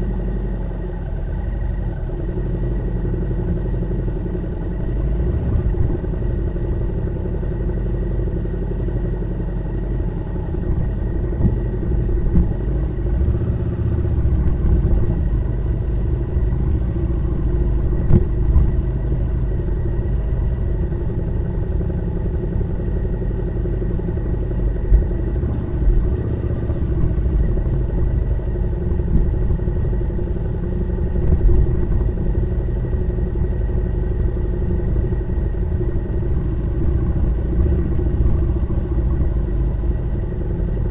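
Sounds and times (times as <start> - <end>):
motorcycle engine running: 0.0 - 40.9
road and wind rumble: 0.0 - 40.9.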